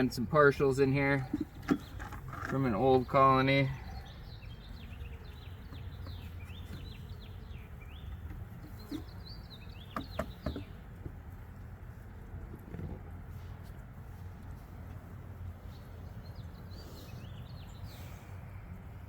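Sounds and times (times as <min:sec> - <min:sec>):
birds chirping and singing: 0:00.0 - 0:11.2, 0:15.4 - 0:19.0.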